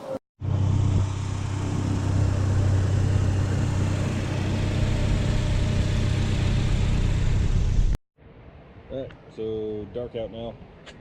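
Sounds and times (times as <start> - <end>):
car engine droning: 0.4 - 8.0.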